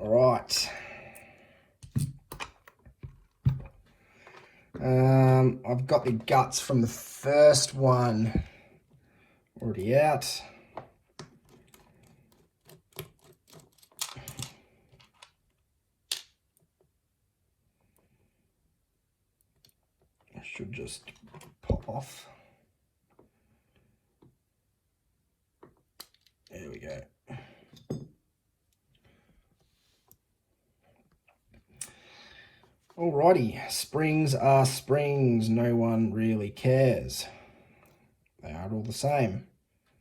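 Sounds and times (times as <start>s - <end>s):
metal lock parts clicking: 11.4s - 15.4s.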